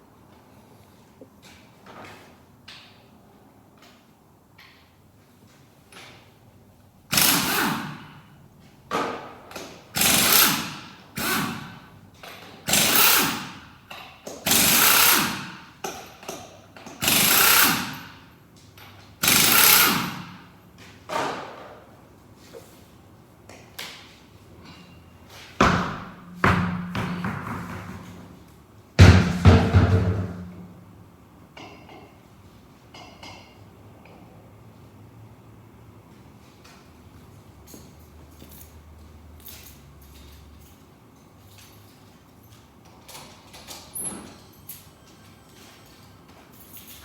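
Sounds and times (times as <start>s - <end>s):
impact wrench bursts: 7.1s - 8.4s, 9.5s - 18.3s, 19.2s - 20.6s.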